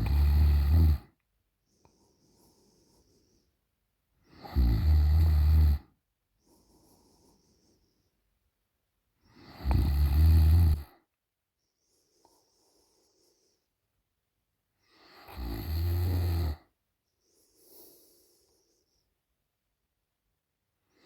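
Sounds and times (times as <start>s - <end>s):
woman snoring: 0.0s - 1.1s, 4.3s - 6.0s, 9.3s - 10.9s, 15.0s - 16.7s
soft breath: 1.6s - 4.3s, 6.3s - 8.4s, 11.5s - 14.0s, 17.0s - 19.3s.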